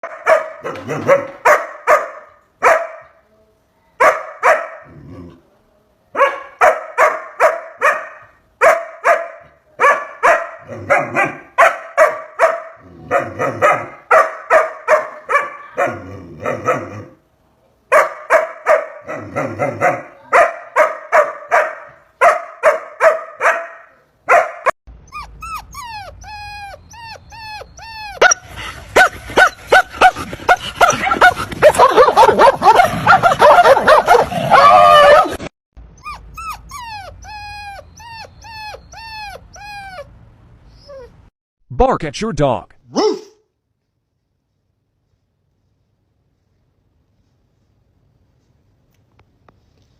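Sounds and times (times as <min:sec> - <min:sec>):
dog barking: 0:00.0 - 0:03.2, 0:04.0 - 0:04.9, 0:06.2 - 0:17.0, 0:17.9 - 0:24.7, 0:29.0 - 0:35.4, 0:42.9 - 0:43.4
dog yipping and whining: 0:21.5 - 0:41.3, 0:42.9 - 0:43.4.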